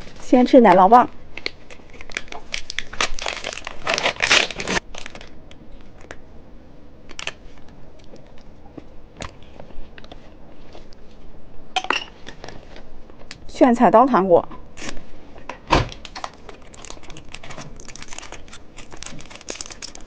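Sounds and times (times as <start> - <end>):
plastic wrapper crinkling and tearing: 1.4 - 6.2, 16.0 - 20.0.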